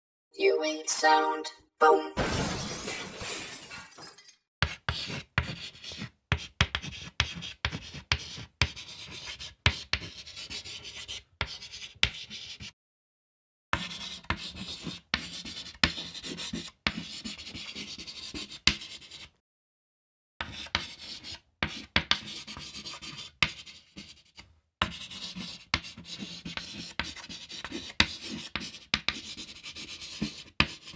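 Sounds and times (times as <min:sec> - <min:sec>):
chalk scratching on chalkboard: 0:04.6 - 0:12.7, 0:13.8 - 0:19.3, 0:20.4 - 0:30.9
chalk tapping on chalkboard: 0:04.6 - 0:12.7, 0:13.8 - 0:19.3, 0:20.4 - 0:30.9.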